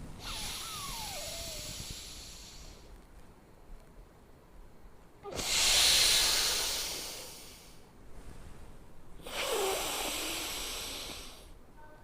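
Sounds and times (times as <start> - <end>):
forceful breath through nostril: 0.2 - 2.9, 5.3 - 8.6, 9.2 - 11.6.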